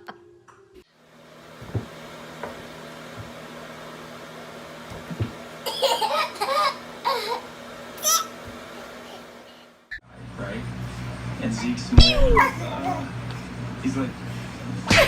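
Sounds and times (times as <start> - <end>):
steady low hum: 1.0 - 15.0
baby laughing: 5.7 - 9.4, 11.5 - 13.4.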